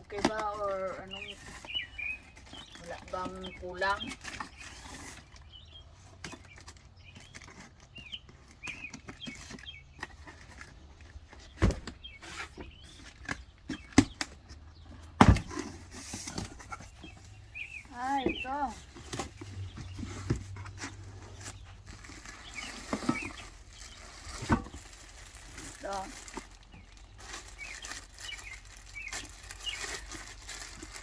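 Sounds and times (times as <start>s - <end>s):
small birds chirping: 0.0s - 31.0s
packaging rustling: 18.8s - 31.0s.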